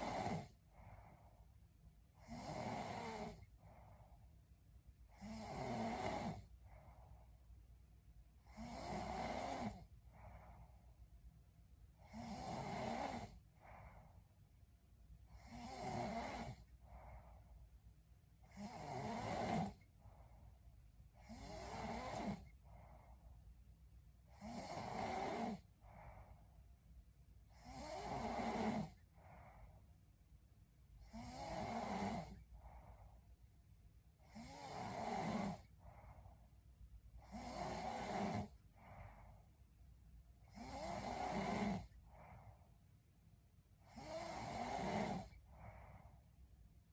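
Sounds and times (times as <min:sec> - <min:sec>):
woman snoring: 0:00.0 - 0:01.0, 0:02.2 - 0:03.6, 0:05.1 - 0:06.6, 0:08.4 - 0:10.6, 0:12.0 - 0:14.0, 0:15.3 - 0:17.4, 0:18.4 - 0:19.9, 0:21.1 - 0:22.6, 0:24.3 - 0:26.3, 0:27.5 - 0:29.6, 0:31.0 - 0:32.8, 0:34.2 - 0:35.8, 0:37.2 - 0:39.2, 0:40.4 - 0:42.4, 0:43.8 - 0:46.0.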